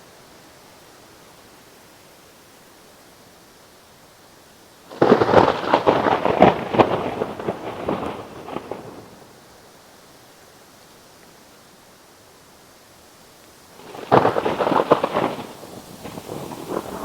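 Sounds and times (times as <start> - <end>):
steady hiss: 0.0 - 17.0
thunderclap: 4.9 - 9.3, 13.8 - 17.0.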